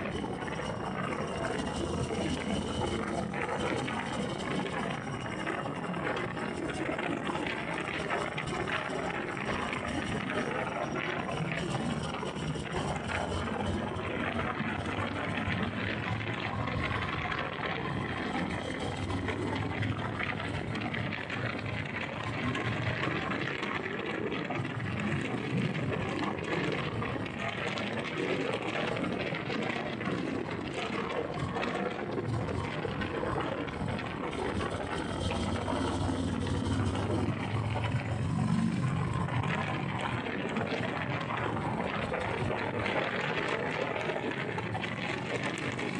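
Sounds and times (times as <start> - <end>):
motorcycle engine running: 33.7 - 39.2.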